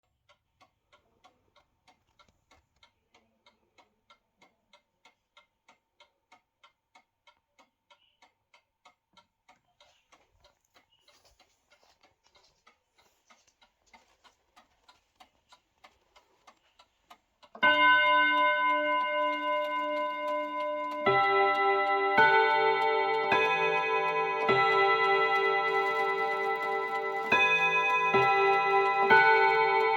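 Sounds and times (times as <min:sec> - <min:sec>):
mantel clock ticking: 0:00.0 - 0:29.9
clock chiming: 0:17.6 - 0:29.9.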